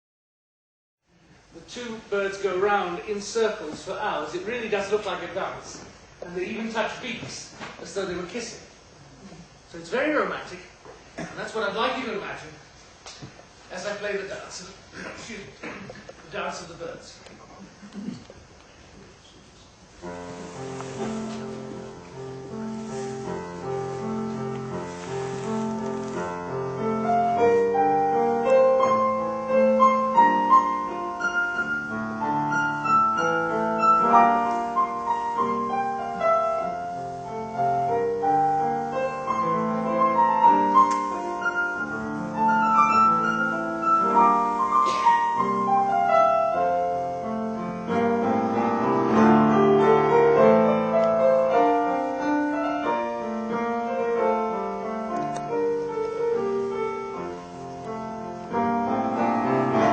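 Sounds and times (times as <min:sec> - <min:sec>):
solo piano melody: 0:19.9 - 0:59.9.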